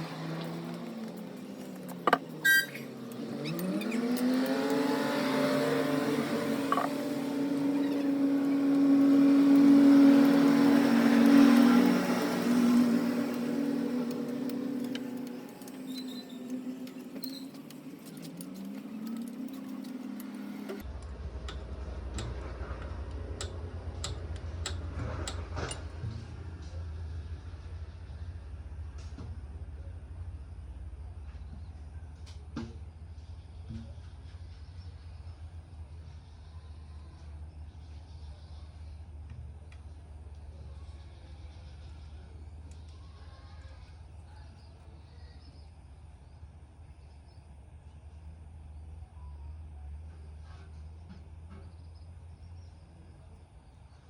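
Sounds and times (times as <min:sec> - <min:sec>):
motorcycle engine revving: 0:00.0 - 0:28.4.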